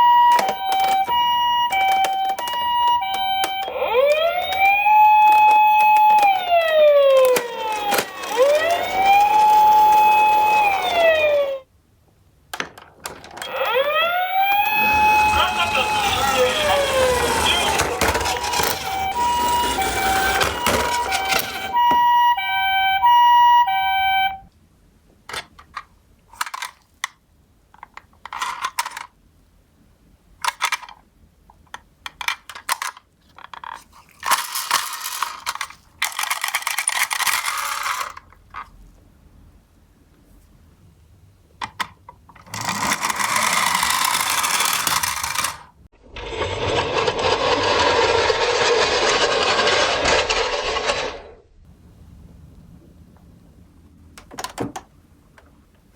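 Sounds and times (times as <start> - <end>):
ambulance two-tone siren: 0.0 - 11.6, 13.4 - 24.5
clicks: 0.2 - 11.6
toy cars rattling on a track: 0.3 - 11.6, 13.1 - 21.8, 28.2 - 29.1, 30.4 - 31.0, 32.0 - 38.3, 42.4 - 51.4.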